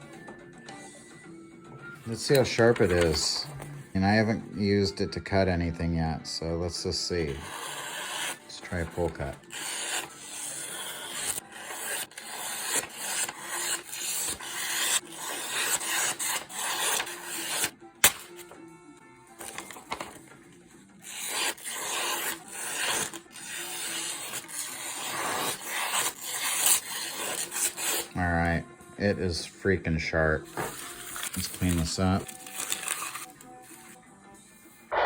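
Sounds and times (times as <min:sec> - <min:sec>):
blade slicing through paper: 0:02.1 - 0:03.7, 0:07.2 - 0:18.5, 0:19.4 - 0:20.2, 0:21.0 - 0:28.2, 0:30.5 - 0:34.0.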